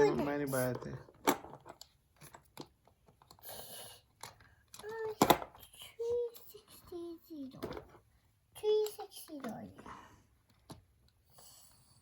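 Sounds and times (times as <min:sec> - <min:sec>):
small toys clicking: 0:00.6 - 0:07.1
child vocal sounds: 0:04.8 - 0:07.6.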